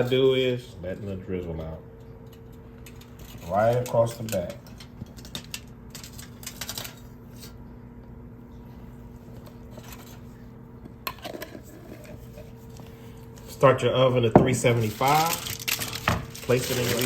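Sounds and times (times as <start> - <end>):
steady electrical hum: 0.0 - 17.0
kitchen items clicking and rustling: 2.4 - 7.1, 14.4 - 17.0.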